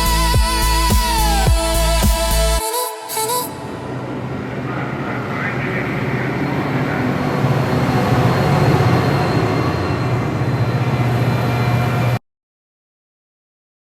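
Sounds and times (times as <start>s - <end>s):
train rumbling: 3.2s - 12.2s.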